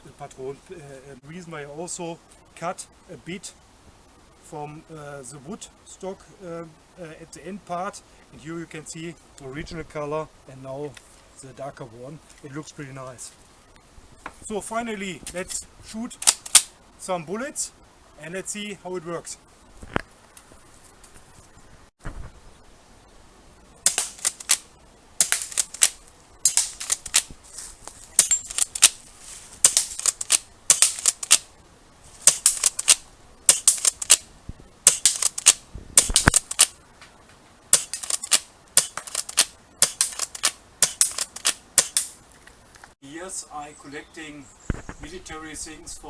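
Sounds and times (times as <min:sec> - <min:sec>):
airsoft shotgun pumping and firing: 0:16.2 - 0:16.7, 0:23.9 - 0:27.4, 0:28.2 - 0:31.5, 0:32.2 - 0:34.2, 0:34.9 - 0:36.8, 0:37.7 - 0:42.2.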